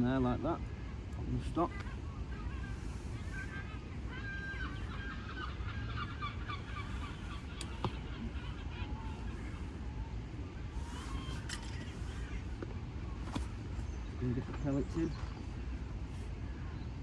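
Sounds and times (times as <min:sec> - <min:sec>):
steady low rumble: 0:00.0 - 0:17.0
geese honking: 0:02.4 - 0:12.5.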